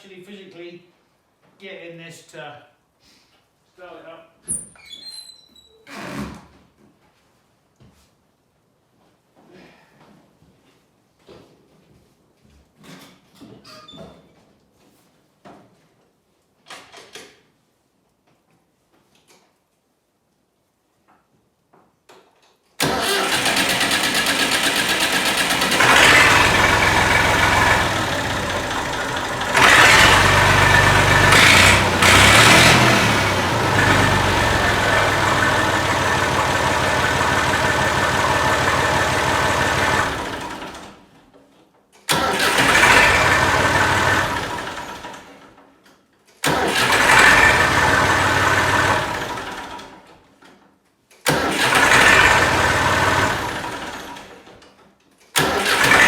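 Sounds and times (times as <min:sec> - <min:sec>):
starter motor cranking: 0:22.8 - 0:40.9, 0:42.1 - 0:45.1, 0:46.4 - 0:49.8, 0:51.3 - 0:54.1, 0:55.4 - 0:56.0
tractor engine running and revving: 0:22.8 - 0:40.9, 0:42.1 - 0:45.2, 0:46.5 - 0:49.9, 0:51.3 - 0:54.2, 0:55.4 - 0:56.0.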